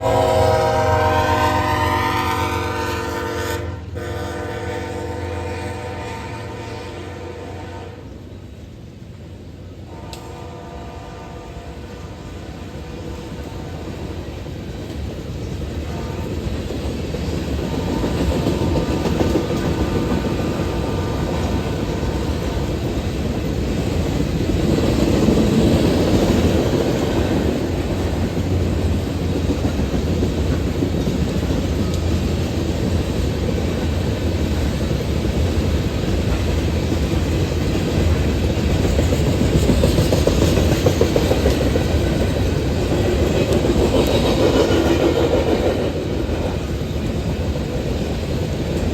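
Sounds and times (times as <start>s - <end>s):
train wheels rumbling on rail: 0.0s - 48.9s
clickety-clack over rail joints: 11.4s - 48.9s.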